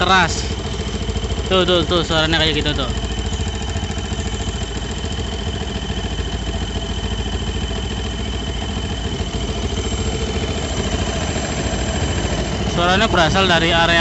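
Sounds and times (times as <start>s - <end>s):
high whistling hum: 0.0s - 14.0s
motorcycle engine idling: 0.0s - 14.0s.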